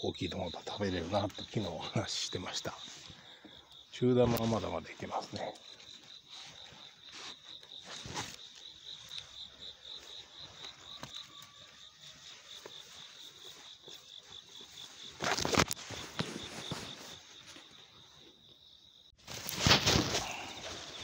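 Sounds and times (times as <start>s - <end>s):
insect chirping: 0.0s - 21.0s
loud rustling: 19.2s - 20.7s.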